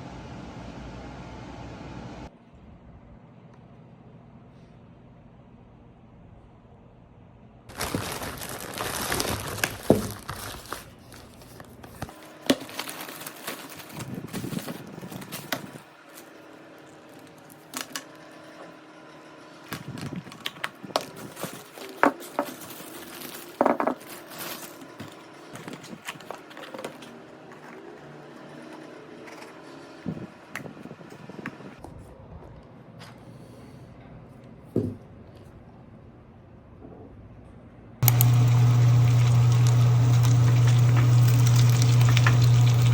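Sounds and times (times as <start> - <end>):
crinkling and handling: 7.7 - 18.1, 19.7 - 29.8, 38.0 - 42.9.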